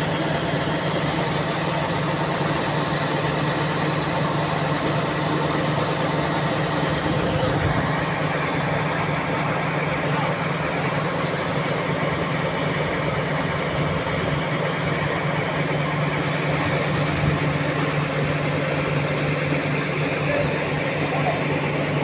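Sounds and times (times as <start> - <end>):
crane engine humming: 0.0 - 22.0.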